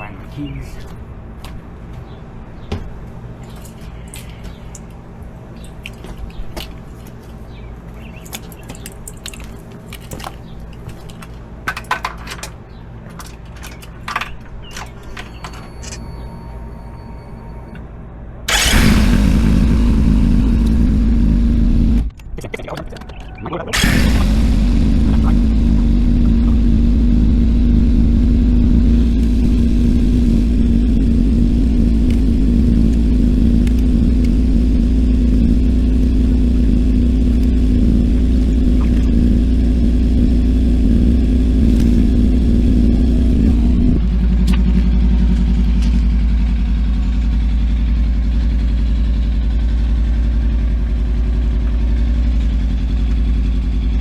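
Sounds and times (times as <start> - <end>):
motorcycle engine idling: 18.5 - 22.1, 23.2 - 54.0.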